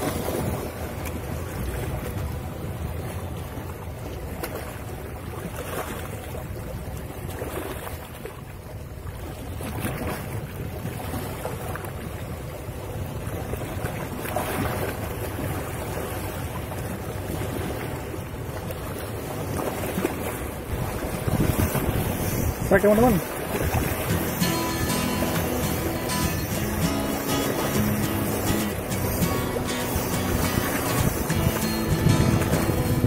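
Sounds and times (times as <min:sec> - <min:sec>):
sea surf: 0:00.0 - 0:33.0
wind on microphone: 0:09.2 - 0:33.0.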